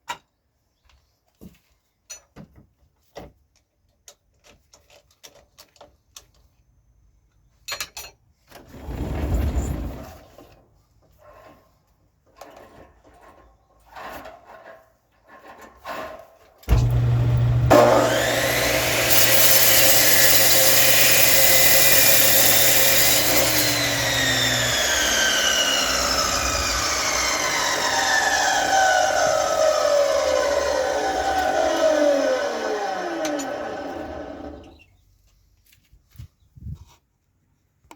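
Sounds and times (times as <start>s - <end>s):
woodworking lathe running: 16.7s - 34.7s
lathe winding down: 16.7s - 34.8s.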